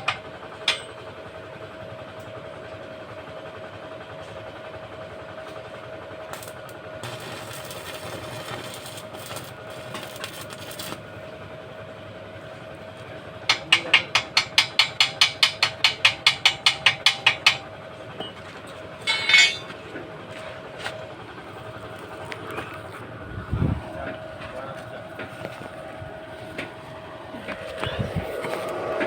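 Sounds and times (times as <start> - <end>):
steady hum: 6.4 - 11.4, 19.0 - 29.0
hand tool striking metal: 19.0 - 19.7.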